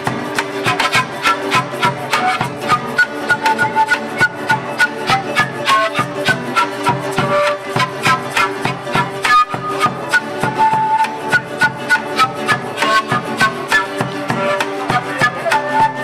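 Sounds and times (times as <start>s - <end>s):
flute melody: 0.0s - 16.0s
strummed charango and guitar: 0.0s - 16.0s.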